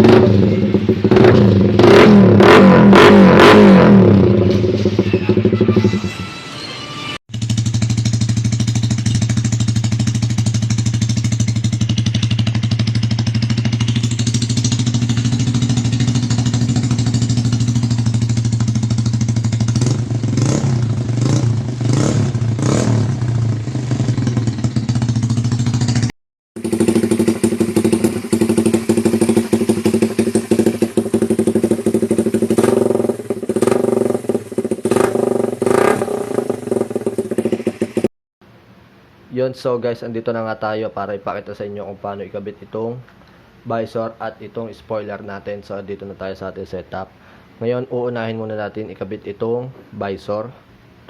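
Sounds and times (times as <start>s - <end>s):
motorcycle engine idling and revving: 0.0s - 6.1s, 7.3s - 38.1s.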